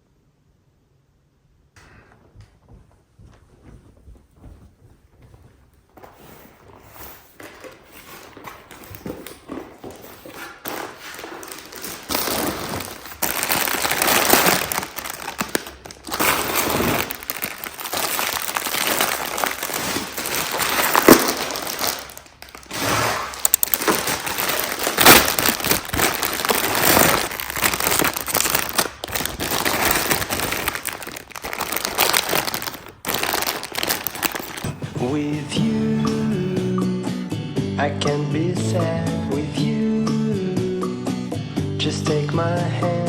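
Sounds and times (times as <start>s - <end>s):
plastic packaging crinkling: 6.0s - 36.7s.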